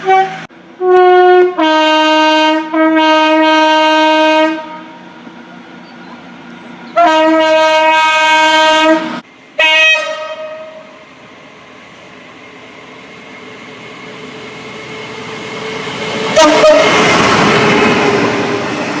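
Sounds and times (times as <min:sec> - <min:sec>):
train horn blast: 0:00.0 - 0:05.0, 0:06.9 - 0:11.0, 0:16.3 - 0:17.2
train running noise: 0:00.0 - 0:19.0.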